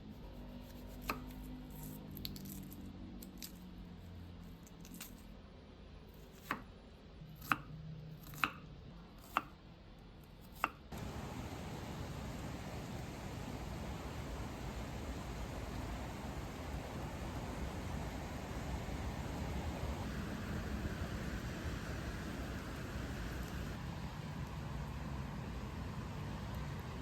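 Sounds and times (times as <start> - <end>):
faint low hum: 10.9 - 27.0
rain hissing: 10.9 - 27.0.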